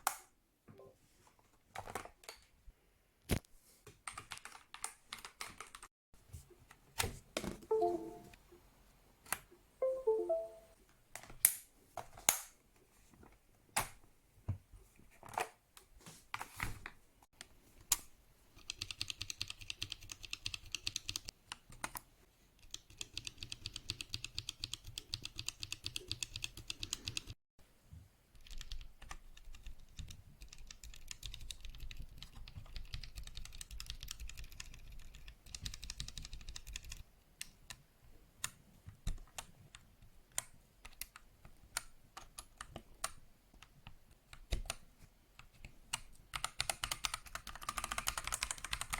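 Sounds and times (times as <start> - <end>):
typing on mechanical keyboard: 4.0 - 5.9, 18.6 - 22.0, 22.6 - 27.4, 28.3 - 37.8, 45.4 - 48.9.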